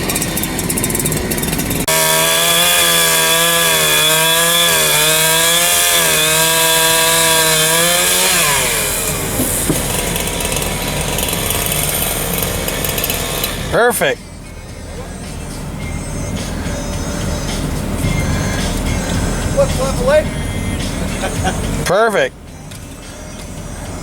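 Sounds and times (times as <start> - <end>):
chainsaw cutting wood: 0.0 - 14.2.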